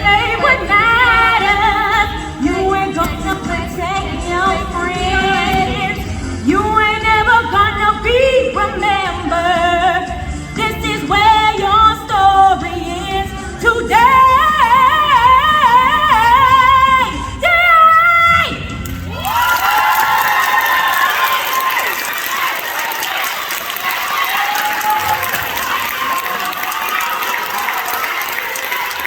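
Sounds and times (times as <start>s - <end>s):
people singing with vibrato: 0.0s - 18.8s
musical accompaniment: 0.0s - 22.4s.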